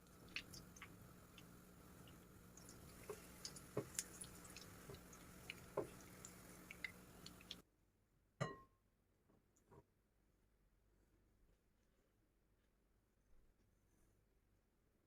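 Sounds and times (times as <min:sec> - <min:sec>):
soft wet squishes: 0:00.0 - 0:07.6.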